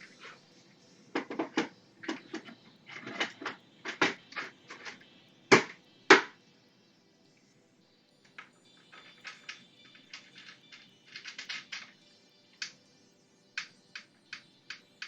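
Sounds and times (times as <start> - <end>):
hard plastic parts knocking: 1.1 - 4.9, 5.5 - 6.3, 8.9 - 12.0.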